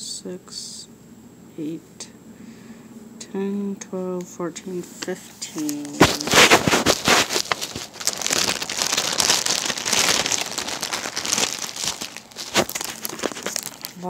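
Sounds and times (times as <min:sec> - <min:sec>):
plastic bags crinkling: 0:05.5 - 0:14.0.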